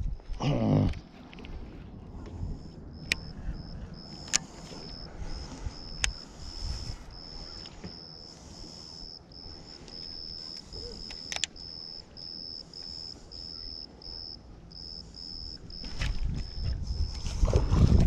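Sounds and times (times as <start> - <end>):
sharp clicks: 3.0 - 3.4, 4.1 - 4.5, 5.9 - 6.2, 9.9 - 11.7.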